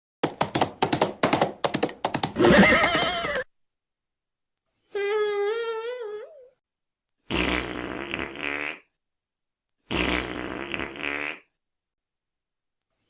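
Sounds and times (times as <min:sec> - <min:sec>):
fart sound effects: 0:07.3 - 0:08.9, 0:09.9 - 0:11.5.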